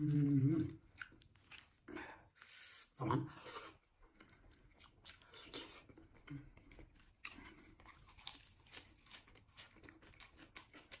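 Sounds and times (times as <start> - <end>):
crunchy food chewing: 4.1 - 11.0.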